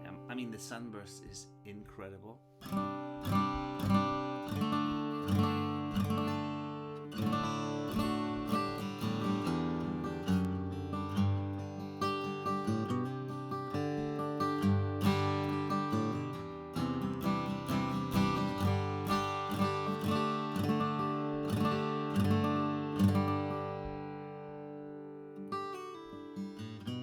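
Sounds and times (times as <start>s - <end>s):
acoustic guitar picked and strummed: 0.0s - 27.0s.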